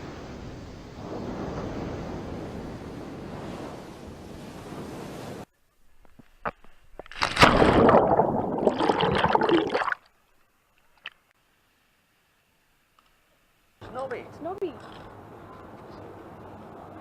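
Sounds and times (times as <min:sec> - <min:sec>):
wind: 0:00.0 - 0:17.0
rushing splashing water: 0:07.1 - 0:10.1.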